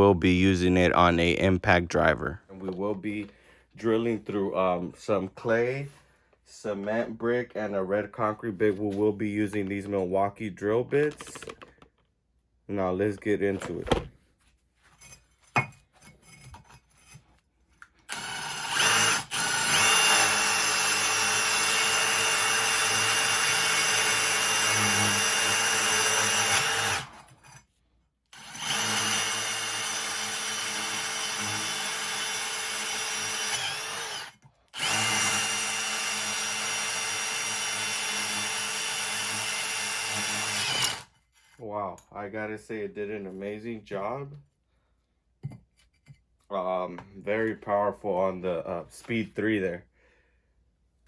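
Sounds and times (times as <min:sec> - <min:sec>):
impact driver drilling into brick: 0:18.1 - 0:27.3, 0:28.3 - 0:41.1.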